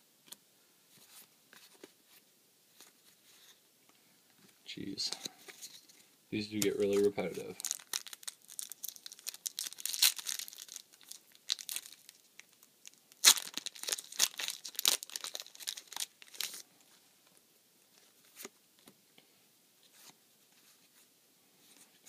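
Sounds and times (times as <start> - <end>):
foil wrapper tearing and crinkling: 6.9 - 16.6.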